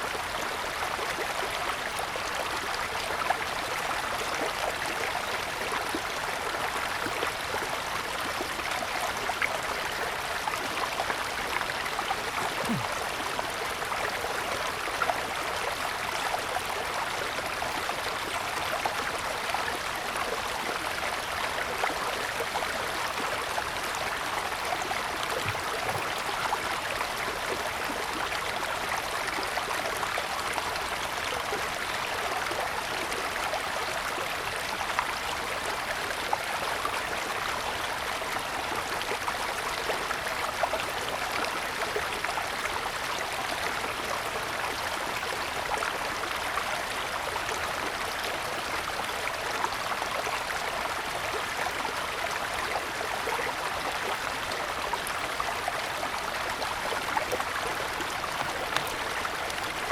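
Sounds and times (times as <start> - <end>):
stream rushing over stones: 0.0 - 32.3, 49.1 - 59.9.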